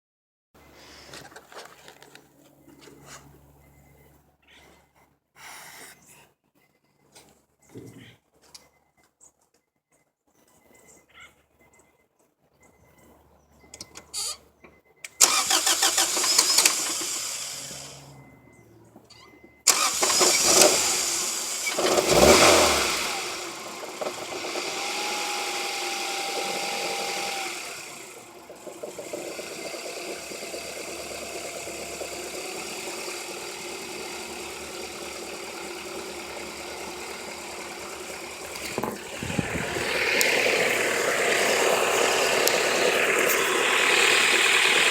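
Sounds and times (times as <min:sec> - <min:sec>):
car engine starting and idling: 0:15.0 - 0:44.9.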